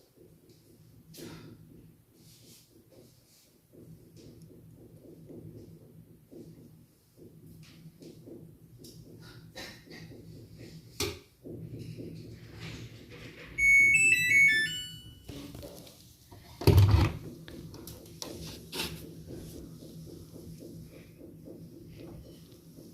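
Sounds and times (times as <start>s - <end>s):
electronic beep tune: 13.6s - 15.2s.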